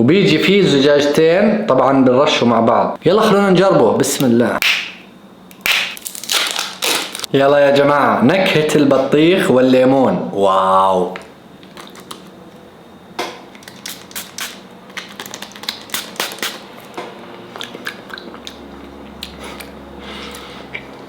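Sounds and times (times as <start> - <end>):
wet mouth clicks and smacks: 13.6 - 16.6, 17.3 - 20.9.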